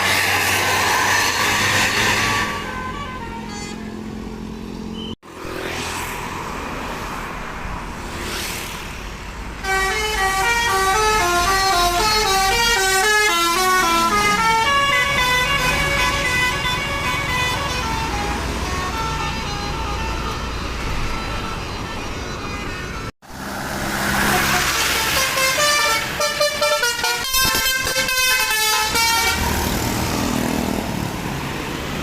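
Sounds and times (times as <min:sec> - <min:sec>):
road and engine noise: 0:00.0 - 0:32.0
multi-tone bus horn melody: 0:01.3 - 0:04.4, 0:09.6 - 0:23.1, 0:24.0 - 0:30.5.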